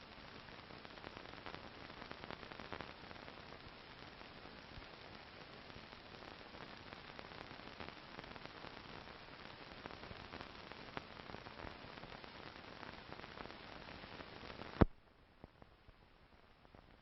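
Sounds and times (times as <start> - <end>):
film hiss: 0.0 - 17.0
crackling clicks: 9.9 - 15.7.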